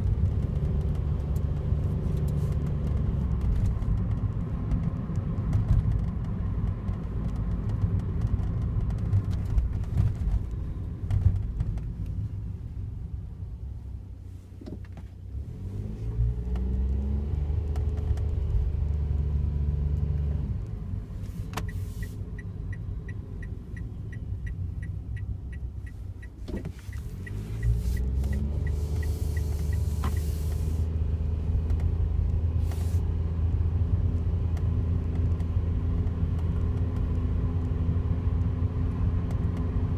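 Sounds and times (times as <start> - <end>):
car engine rumble in cabin: 0.0 - 39.9
regular high ticking: 21.6 - 30.4.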